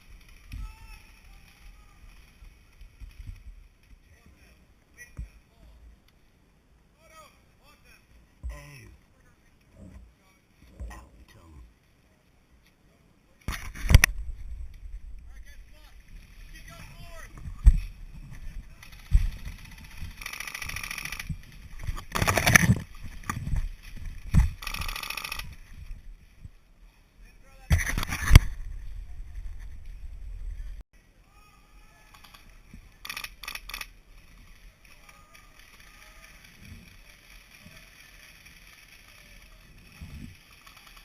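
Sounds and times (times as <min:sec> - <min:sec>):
low bumps of movement: 0:13.7 - 0:26.7, 0:27.7 - 0:30.8.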